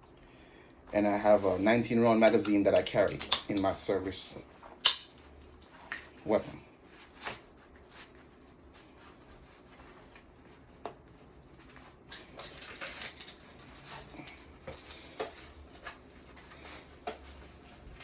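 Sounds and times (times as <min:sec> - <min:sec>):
gear rustling with small clicks: 0:10.9 - 0:18.0.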